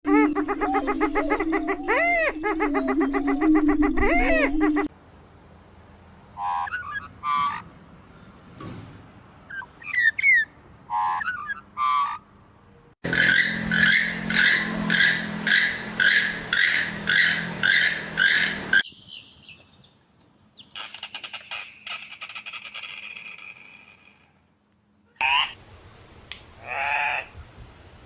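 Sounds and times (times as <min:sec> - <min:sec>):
birds calling: 0:06.4 - 0:07.7, 0:13.0 - 0:25.6
rhythmic series of bird calls: 0:13.0 - 0:19.7, 0:20.6 - 0:25.6
faint high bird trill: 0:13.1 - 0:19.6.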